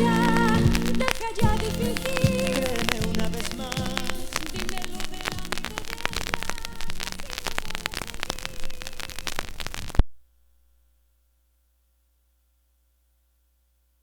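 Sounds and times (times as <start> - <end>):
faint ballad instrumental: 0.0 - 8.2
vinyl crackle and pops: 0.0 - 10.2.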